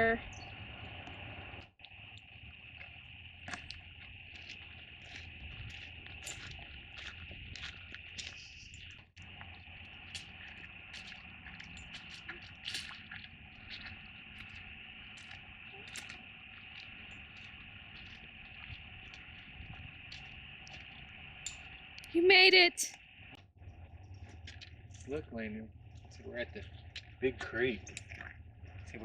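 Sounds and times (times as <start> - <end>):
footsteps crunching on trail: 2.4 - 21.9.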